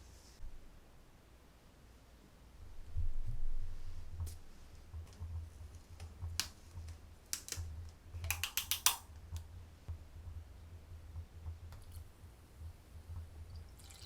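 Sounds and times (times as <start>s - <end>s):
light sharp clicks and taps: 5.0s - 10.0s
steady low hum: 9.0s - 14.0s.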